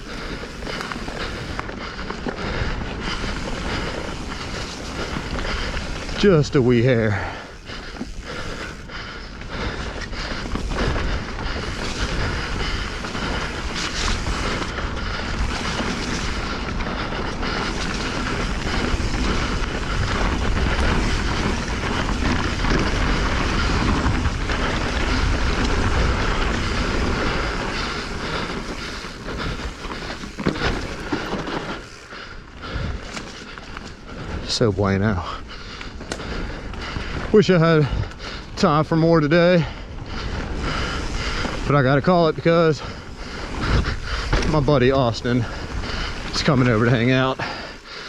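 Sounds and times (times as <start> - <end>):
bike knocking and rattling: 0.0 - 48.0
bike tyre noise on dirt: 0.0 - 48.0
wind rushing over microphone: 39.9 - 47.9.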